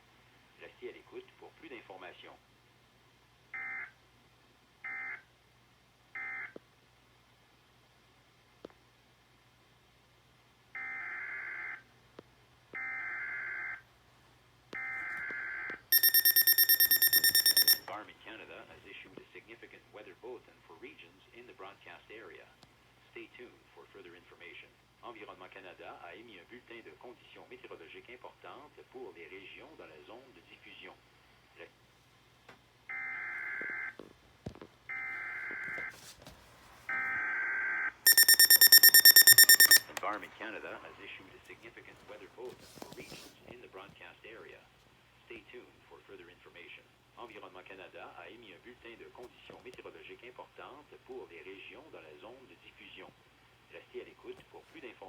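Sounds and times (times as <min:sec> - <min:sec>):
pulsing electronic alert tone: 0:16.0 - 0:17.8, 0:38.1 - 0:39.8
warbling data tone bursts: 0:16.0 - 0:17.8, 0:38.1 - 0:39.8
harsh pulsing alert tone: 0:38.1 - 0:39.8.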